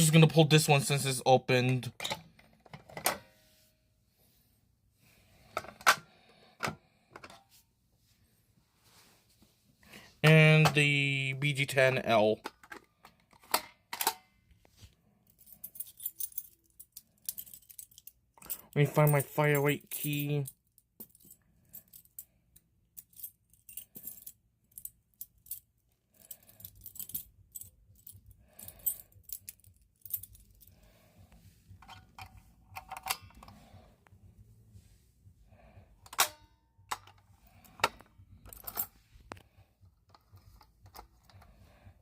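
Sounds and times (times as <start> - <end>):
keys jangling: 15.3 - 22.3, 23.0 - 30.8, 36.9 - 39.4.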